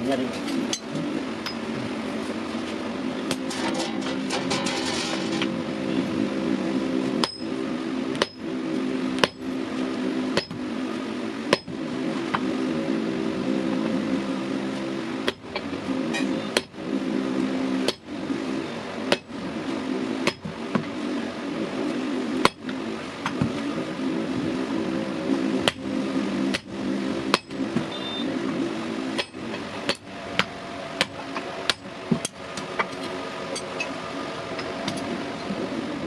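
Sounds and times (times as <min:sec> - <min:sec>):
steady mechanical hum: 0:00.0 - 0:36.0
hammer blows ringing on steel: 0:07.2 - 0:07.5, 0:10.4 - 0:10.6.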